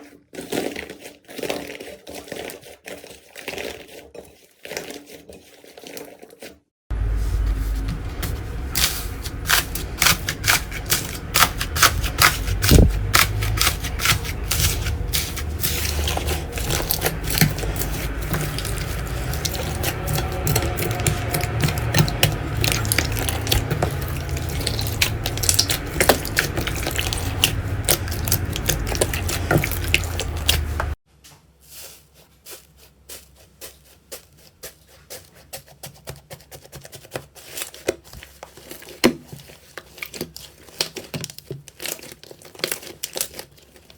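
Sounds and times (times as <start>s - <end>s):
slime squishing with wet clicks: 16.3s - 31.0s.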